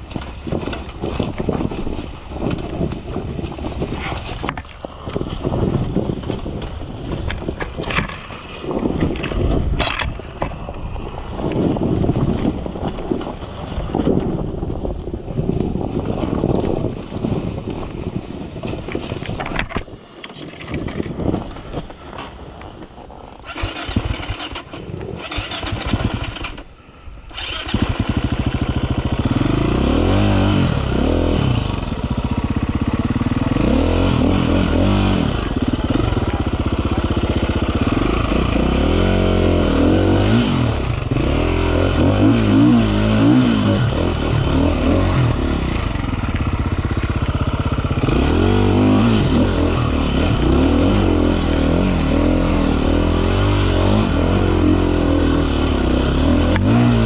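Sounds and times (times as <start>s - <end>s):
dirt bike engine revving: 23.4s - 26.7s, 27.3s - 57.0s.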